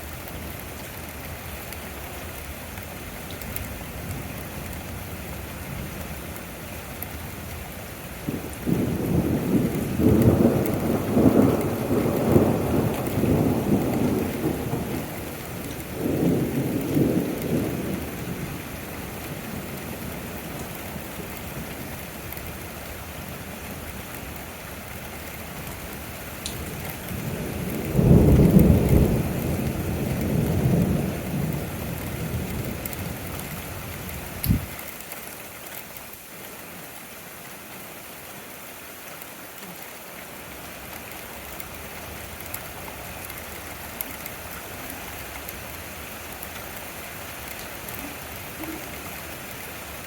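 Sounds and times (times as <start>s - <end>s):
steady rain: 0.0s - 50.0s
thunder rumbling: 8.2s - 22.0s, 26.5s - 34.8s.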